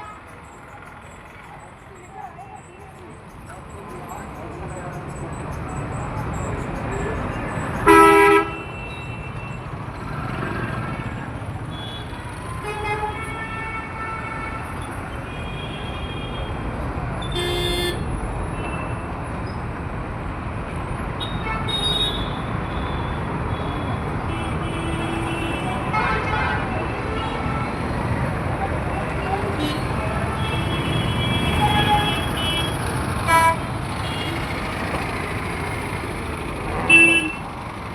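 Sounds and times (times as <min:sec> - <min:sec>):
traffic rumble: 0:00.0 - 0:37.9
vehicle horns honking: 0:07.8 - 0:09.6, 0:17.3 - 0:18.0, 0:29.0 - 0:34.7, 0:36.8 - 0:37.5.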